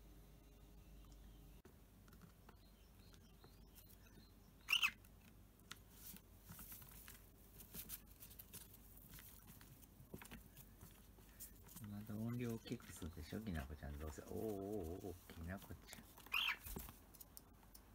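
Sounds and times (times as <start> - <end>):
cockatiel chirp: 2.6 - 5.0, 16.2 - 16.8
faint scratchy clicks and rustles: 5.0 - 17.9.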